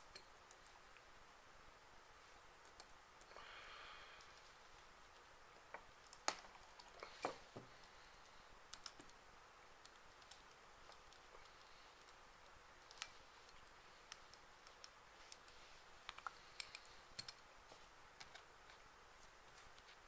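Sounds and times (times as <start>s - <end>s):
small parts and tools clicking: 0.0s - 0.8s, 5.6s - 9.2s, 9.8s - 17.5s.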